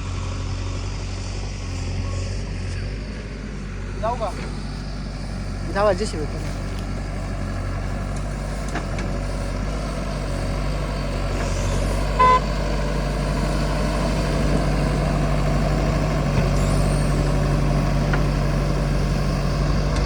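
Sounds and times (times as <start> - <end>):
diesel engine running: 0.0 - 20.0
short horn toot: 12.2 - 12.5.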